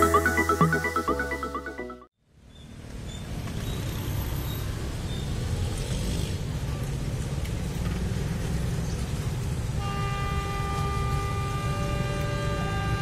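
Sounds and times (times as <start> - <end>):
road traffic rumble: 0.0 - 13.0
level crossing warning siren: 10.5 - 13.0.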